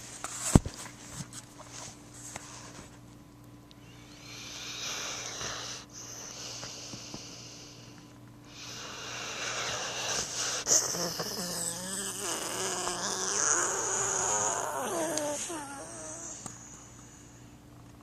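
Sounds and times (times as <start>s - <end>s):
dog snoring: 4.0s - 7.9s, 8.5s - 16.8s.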